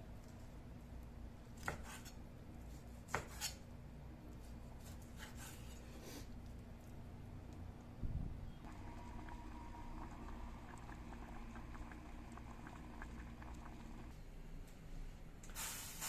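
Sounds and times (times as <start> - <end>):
low steady hum: 3.7 - 15.5.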